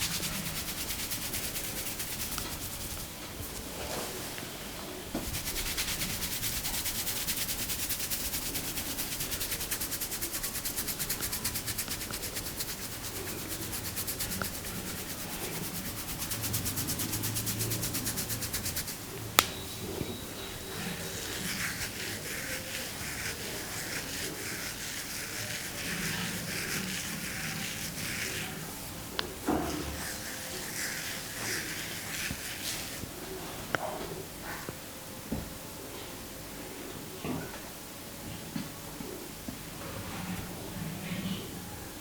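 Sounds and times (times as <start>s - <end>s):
hands rubbing scalp and hair: 0.0s - 4.2s, 5.2s - 19.0s, 20.0s - 33.1s
soft rubbing and rustling: 0.0s - 34.7s.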